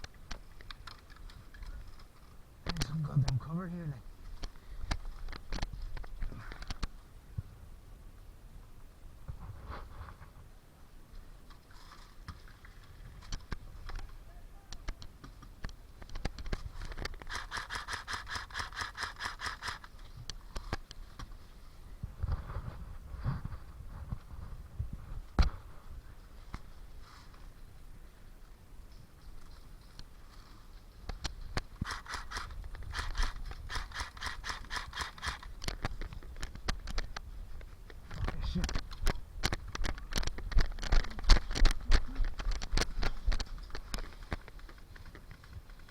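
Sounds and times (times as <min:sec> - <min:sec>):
sharp clicks: 0:00.0 - 0:03.4, 0:14.7 - 0:21.0, 0:31.1 - 0:37.2.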